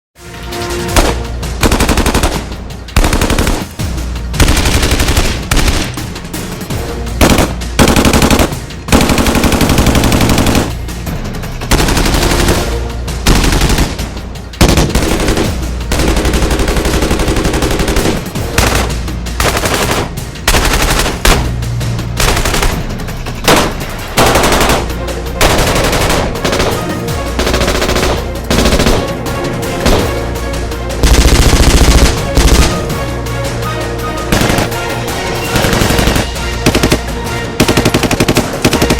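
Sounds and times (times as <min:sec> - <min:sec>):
rifle automatic fire: 0:01.0 - 0:03.8, 0:04.4 - 0:06.0, 0:07.2 - 0:10.8, 0:11.7 - 0:14.0, 0:14.6 - 0:21.5, 0:22.2 - 0:22.8, 0:23.4 - 0:29.1, 0:31.0 - 0:32.8, 0:34.3 - 0:34.8, 0:35.5 - 0:38.9.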